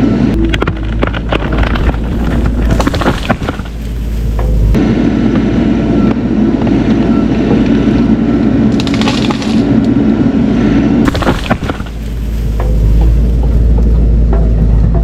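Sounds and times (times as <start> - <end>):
excavator diesel engine under load: 0.0 - 15.0
wood cracking: 0.4 - 4.8, 8.8 - 9.6, 11.1 - 13.1.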